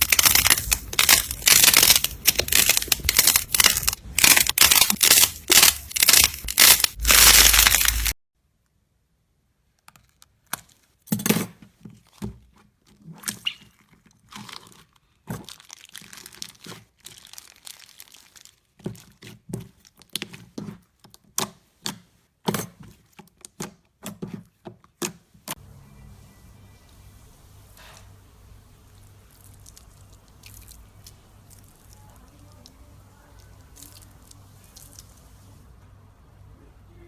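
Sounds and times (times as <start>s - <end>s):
slime crackling and popping: 0.0s - 8.2s, 15.3s - 20.3s, 29.0s - 32.2s, 33.4s - 35.2s.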